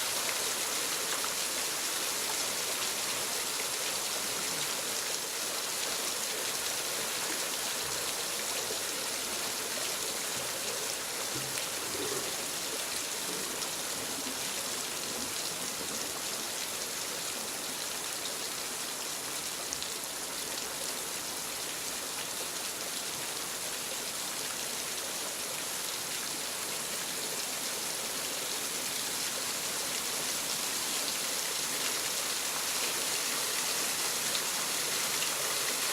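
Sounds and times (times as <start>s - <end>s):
waterfall rushing: 30.6s - 35.9s.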